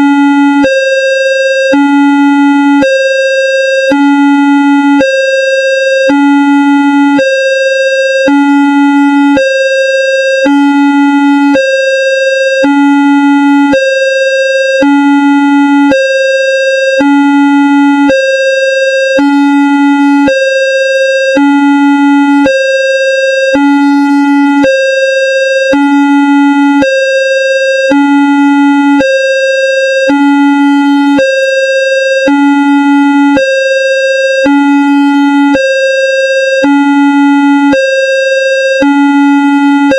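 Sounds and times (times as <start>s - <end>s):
two-tone electronic warning alarm: 0.0s - 39.9s.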